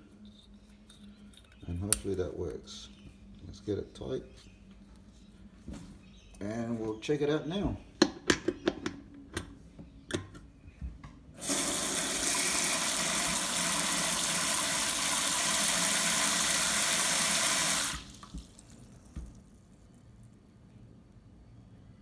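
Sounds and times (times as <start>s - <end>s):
tap water running into sink: 11.4s - 19.5s.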